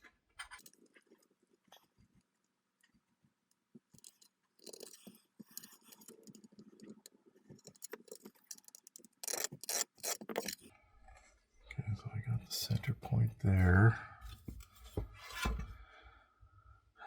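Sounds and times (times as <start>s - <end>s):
plastic parts clicking and tapping: 3.5s - 10.7s.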